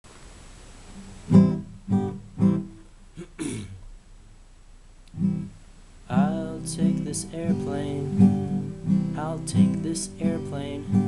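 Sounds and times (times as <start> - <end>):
acoustic guitar strummed: 1.0 - 3.8, 5.2 - 11.0.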